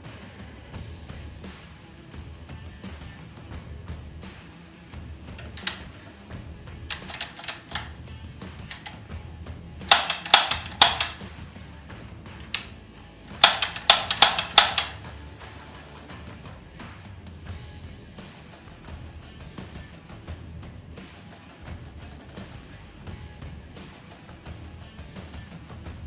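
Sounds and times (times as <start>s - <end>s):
background music: 0.0s - 26.0s
air rifle shots: 5.4s - 6.2s, 6.8s - 8.0s, 8.7s - 9.1s, 9.8s - 11.4s, 12.4s - 12.8s, 13.4s - 15.1s.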